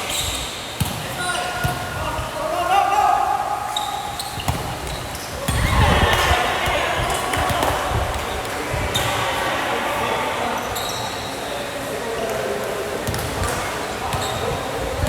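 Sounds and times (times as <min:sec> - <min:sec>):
players' voices echoing: 0:00.0 - 0:15.0
basketball bouncing on gym floor: 0:13.0 - 0:14.4.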